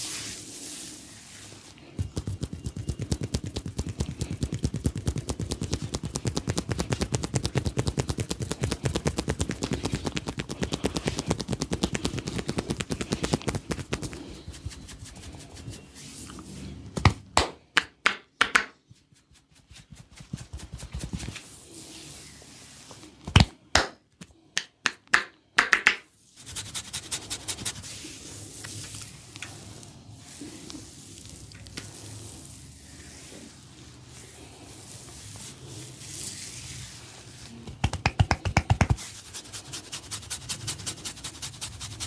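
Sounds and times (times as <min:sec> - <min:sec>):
hands tapping rapidly on head: 0:02.0 - 0:15.1, 0:37.7 - 0:39.0.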